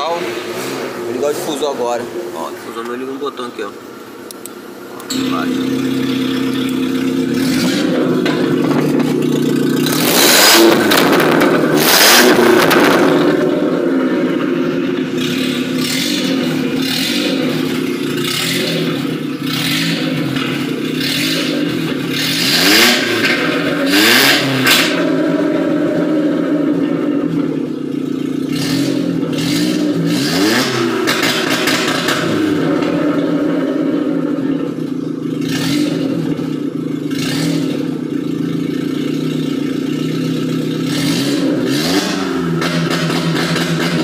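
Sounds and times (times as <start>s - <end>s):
car engine idling: 0.0s - 44.0s
engine revving blips: 4.3s - 27.4s, 28.4s - 34.4s, 40.8s - 44.0s.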